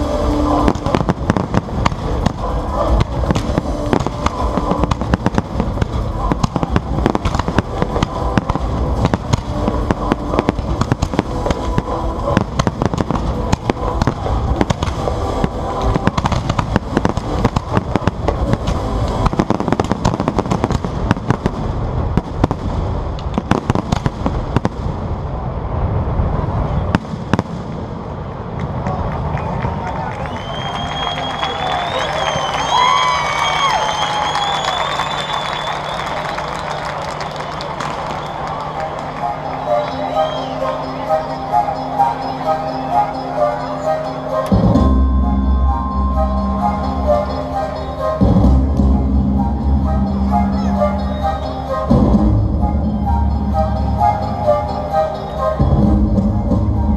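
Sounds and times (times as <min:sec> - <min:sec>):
fireworks bangs and shell bursts: 0:00.1 - 0:24.8.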